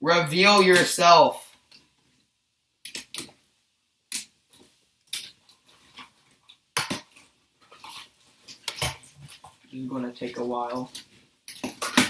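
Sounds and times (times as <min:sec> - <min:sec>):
plastic objects clacking and rattling: 0:04.5 - 0:12.0.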